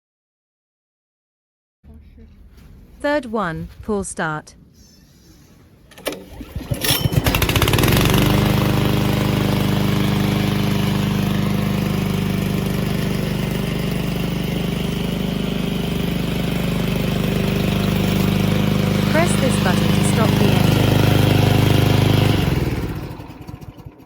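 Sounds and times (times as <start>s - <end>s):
recoil starter pull: 5.9s - 10.1s, 17.3s - 19.1s
petrol engine running: 5.9s - 24.0s.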